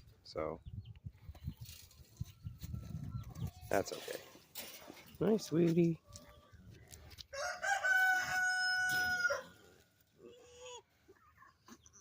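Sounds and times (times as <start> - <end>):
rooster crowing: 7.3 - 9.6.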